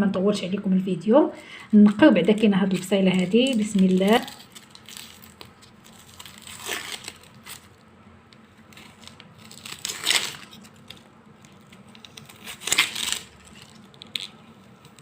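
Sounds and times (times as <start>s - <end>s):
onion skins crackling and tearing: 1.4s - 15.0s.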